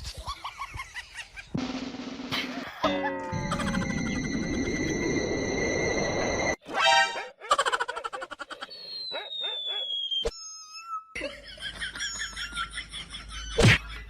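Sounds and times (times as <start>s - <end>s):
laughter in bursts: 0.1s - 1.6s, 7.4s - 8.7s, 11.2s - 14.0s
falling whistle-like tone: 8.6s - 11.1s.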